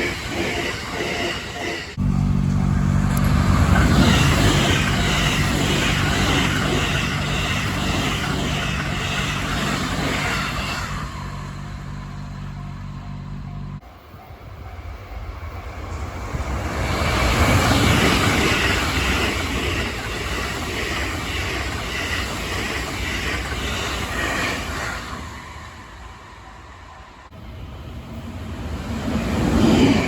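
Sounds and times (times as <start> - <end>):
train rumbling past: 0.0 - 30.0
steady engine hum: 2.0 - 7.9.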